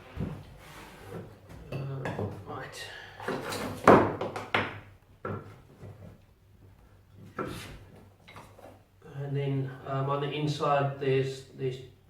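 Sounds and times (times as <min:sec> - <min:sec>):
wooden blocks knocking on workbench: 0:03.8 - 0:05.6.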